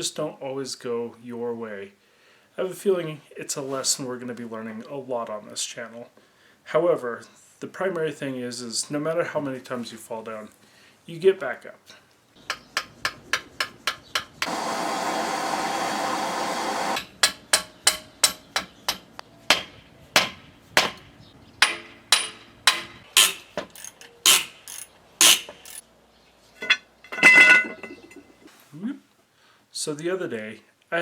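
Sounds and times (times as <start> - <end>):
hammer striking steel on anvil: 17.2 - 21.0, 21.6 - 23.5.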